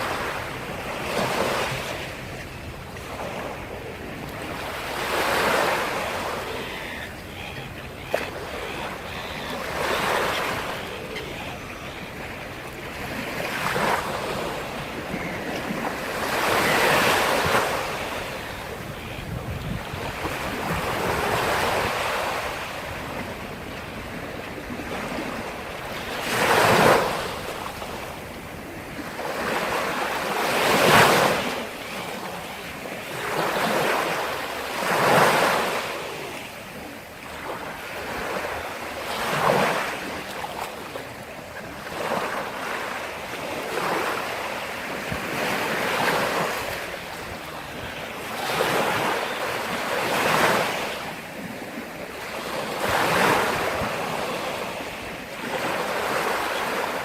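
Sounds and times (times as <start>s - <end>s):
sea waves breaking on shore: 0.0s - 57.0s.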